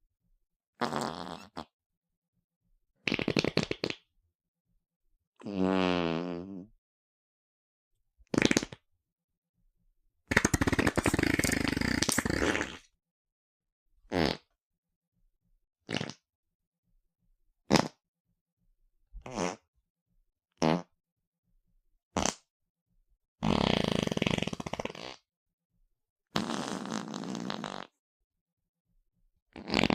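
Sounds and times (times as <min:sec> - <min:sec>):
fart sound effects: 0:00.8 - 0:01.7, 0:03.0 - 0:04.1, 0:05.4 - 0:06.7, 0:08.3 - 0:08.8, 0:10.3 - 0:12.9, 0:14.1 - 0:14.5, 0:15.8 - 0:16.2, 0:17.7 - 0:18.0, 0:19.2 - 0:19.7, 0:20.6 - 0:21.0, 0:22.2 - 0:22.5, 0:23.4 - 0:25.2, 0:26.3 - 0:28.0, 0:29.5 - 0:29.9.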